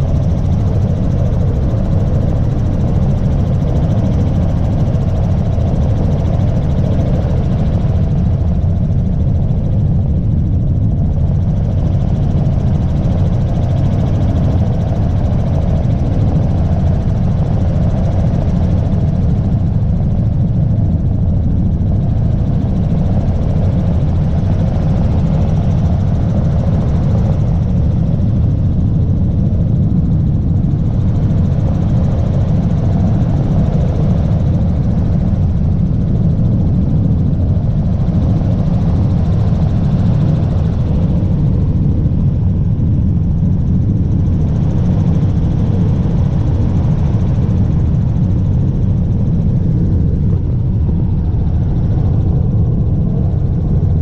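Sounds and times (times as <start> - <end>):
helicopter engine and rotor drone: 0.0 - 54.0.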